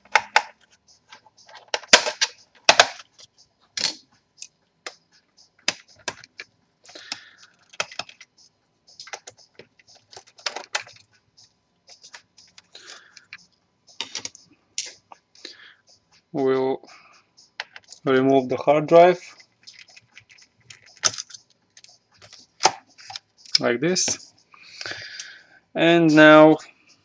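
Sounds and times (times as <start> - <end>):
plastic laptop parts clicking: 0.0 - 0.6, 1.5 - 5.0, 5.6 - 8.3, 9.0 - 11.1, 19.6 - 23.6.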